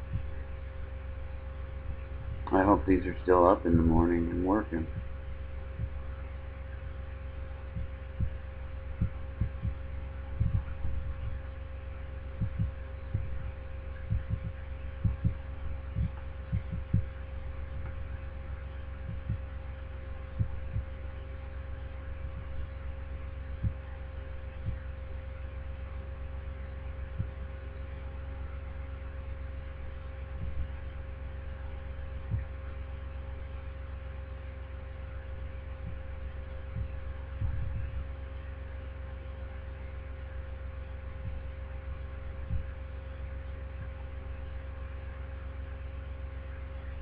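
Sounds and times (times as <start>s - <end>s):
faint constant tone: 0.0s - 47.0s
low hum: 0.0s - 47.0s
low thumps: 7.7s - 11.5s, 12.4s - 18.2s, 19.0s - 19.5s, 20.3s - 21.0s, 30.3s - 30.8s, 35.8s - 36.1s, 36.7s - 38.0s, 42.4s - 42.7s.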